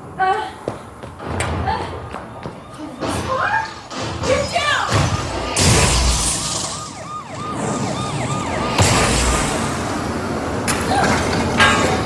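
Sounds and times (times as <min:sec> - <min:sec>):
warbling siren: 0:02.2 - 0:10.9
smashing and clattering: 0:03.9 - 0:07.0
crash: 0:03.9 - 0:07.2, 0:08.6 - 0:10.3.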